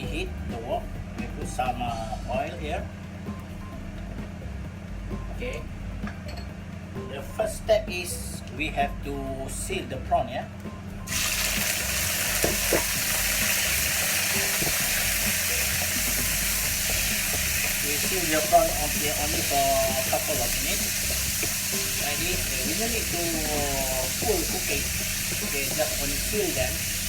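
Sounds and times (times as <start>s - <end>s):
background music with bass line: 0.0s - 27.0s
prawns sizzling in oil: 11.1s - 27.0s.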